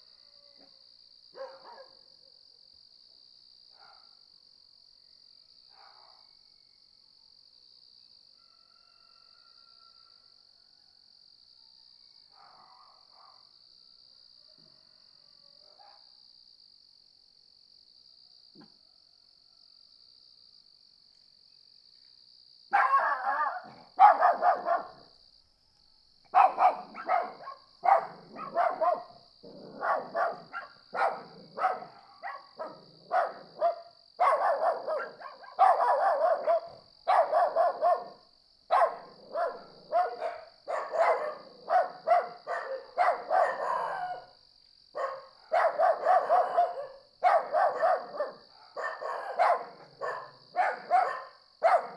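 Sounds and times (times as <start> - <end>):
dogs barking: 1.4 - 2.0, 22.7 - 25.0, 26.4 - 44.3, 45.0 - 51.9
crickets trilling: 21.4 - 51.9.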